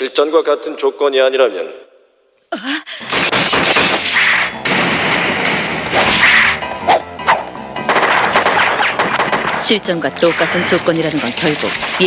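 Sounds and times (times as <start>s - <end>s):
background music: 2.9s - 12.0s
cartoon crashing and hitting: 3.0s - 12.0s.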